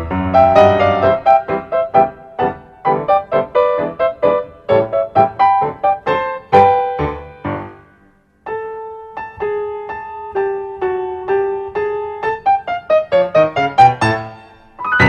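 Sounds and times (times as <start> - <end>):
light piano music: 0.0 - 15.0.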